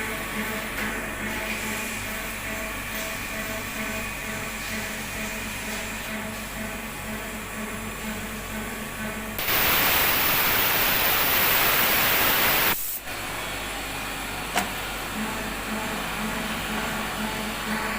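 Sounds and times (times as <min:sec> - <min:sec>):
engraving machine pulsing hum: 0:09.4 - 0:13.0
loud rushing hiss: 0:09.4 - 0:13.1.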